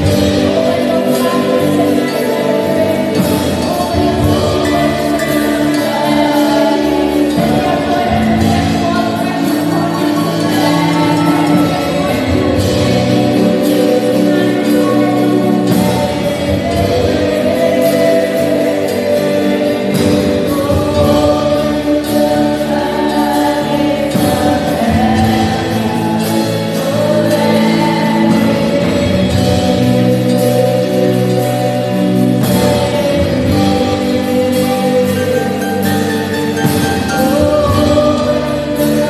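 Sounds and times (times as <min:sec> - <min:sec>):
live band playing: 0:00.0 - 0:39.0
voices singing together: 0:00.0 - 0:39.0.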